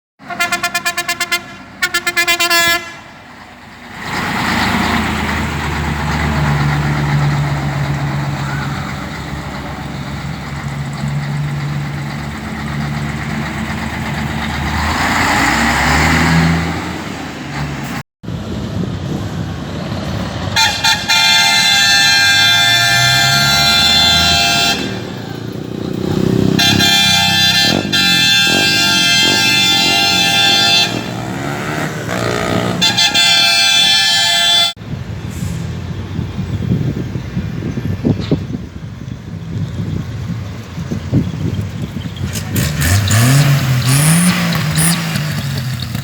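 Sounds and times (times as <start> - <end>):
long multi-tone air horn: 0.2 - 3.2, 20.6 - 25.3, 26.5 - 34.8
truck air horns blasting: 0.2 - 3.3, 20.5 - 34.8
truck diesel engines revving: 0.2 - 46.0.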